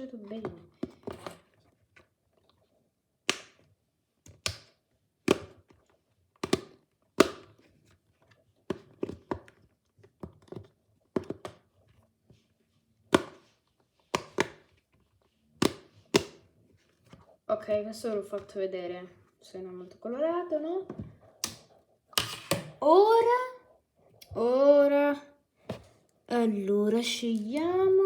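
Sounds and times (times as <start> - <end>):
balls bouncing on hard surface: 0.2 - 1.4, 10.2 - 11.6, 14.1 - 14.7, 15.6 - 16.4.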